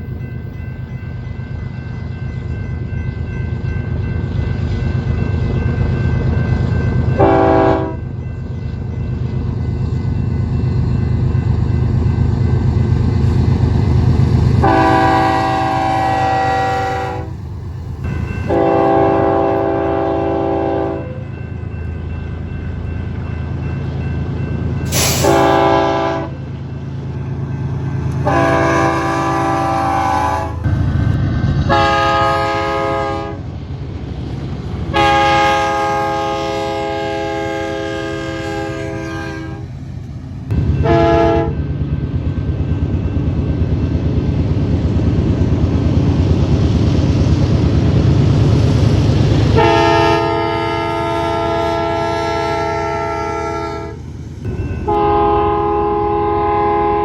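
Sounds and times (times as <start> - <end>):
passing train rumble: 0.0 - 57.0
locomotive air horn blasts: 7.2 - 8.0, 14.6 - 17.3, 18.5 - 21.2, 24.9 - 26.4, 28.2 - 30.7, 31.7 - 33.4, 34.9 - 39.7, 40.8 - 41.6, 49.5 - 57.0.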